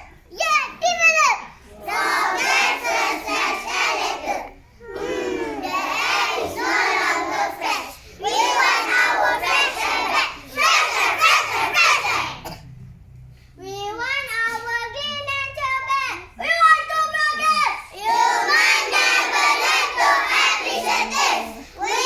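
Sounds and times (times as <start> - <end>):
children reciting in unison: 1.4 - 12.6, 17.6 - 22.0.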